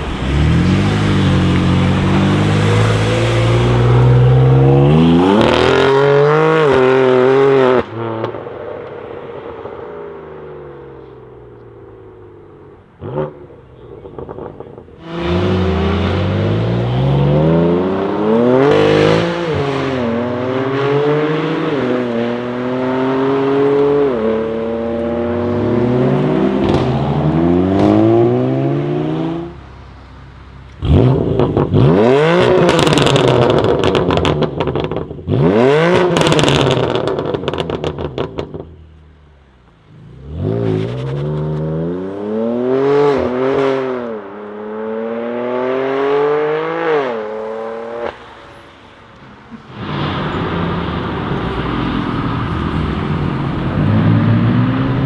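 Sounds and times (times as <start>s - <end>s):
exhaust crackling: 0.0s - 6.0s, 49.2s - 55.0s
car engine accelerating hard: 0.0s - 7.9s, 13.0s - 29.6s, 30.8s - 38.6s, 49.7s - 55.0s.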